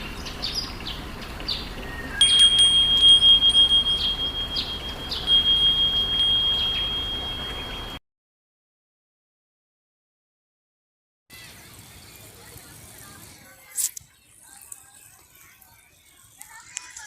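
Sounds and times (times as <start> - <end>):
bright chime tones: 2.2 - 8.0.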